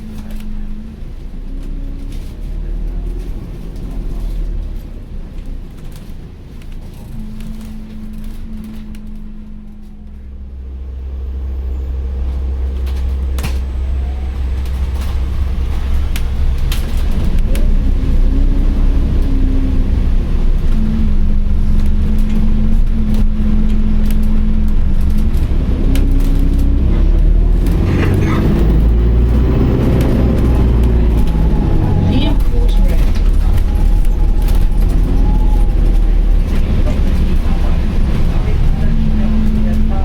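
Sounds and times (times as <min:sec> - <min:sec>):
bus engine low rumble: 0:00.0 - 0:40.0
rattles and clicks: 0:12.3 - 0:40.0.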